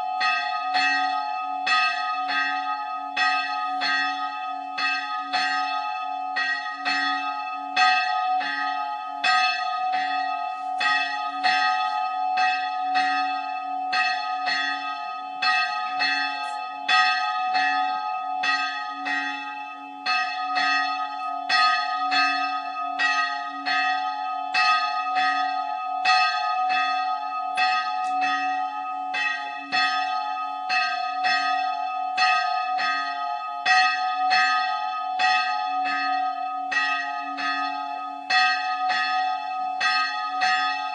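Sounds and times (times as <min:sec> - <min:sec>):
church bell ringing: 0:00.0 - 0:40.9.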